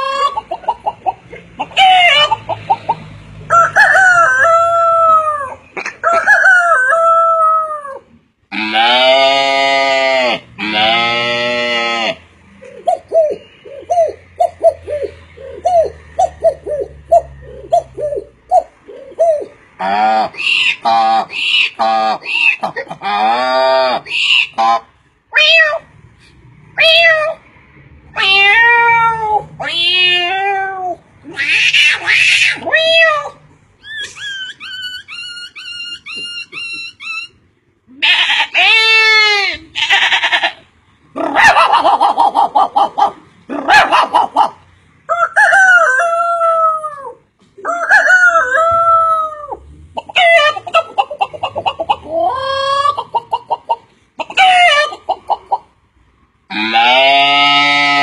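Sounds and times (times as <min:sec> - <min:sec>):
person crowing like a rooster: 0:03.5 - 0:08.0, 0:45.1 - 0:49.6
person making bird-like chirps: 0:33.8 - 0:37.4.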